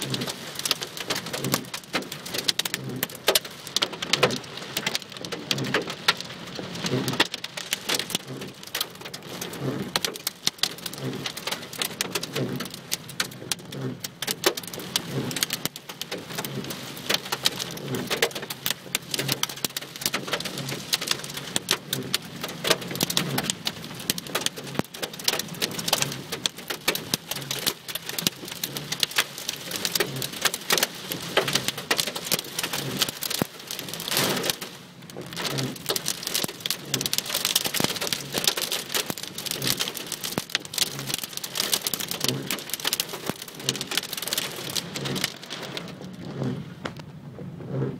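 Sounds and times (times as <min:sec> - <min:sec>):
heavy rain on hard surface: 0:00.0 - 0:47.9.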